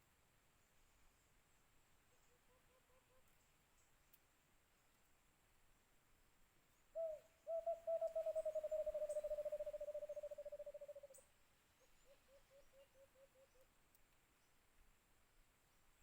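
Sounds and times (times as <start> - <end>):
dove calling low notes: 6.9 - 11.2, 11.8 - 13.7.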